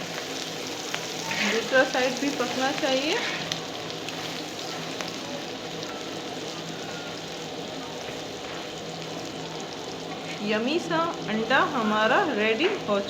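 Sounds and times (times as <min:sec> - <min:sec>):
omelette frying in oil: 0:00.0 - 0:13.0.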